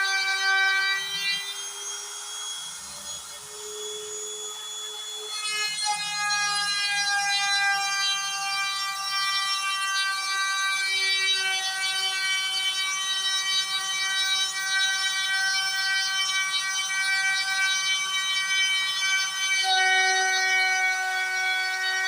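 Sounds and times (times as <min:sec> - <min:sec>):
router spindle whining: 0:00.0 - 0:22.0.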